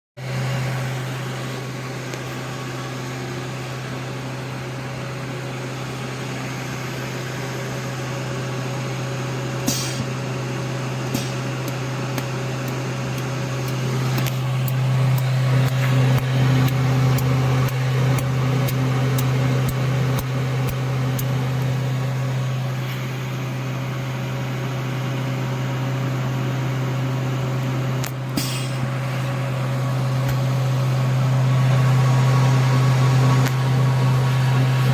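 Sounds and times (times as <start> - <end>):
laser welder humming: 6.6 - 34.9
short hisses: 9.7 - 10.1.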